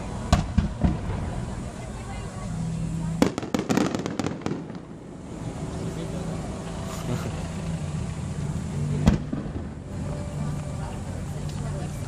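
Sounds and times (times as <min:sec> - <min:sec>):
crowd chatter: 0:00.0 - 0:12.0
firework bang: 0:00.3 - 0:01.4, 0:03.2 - 0:05.0, 0:09.0 - 0:09.8.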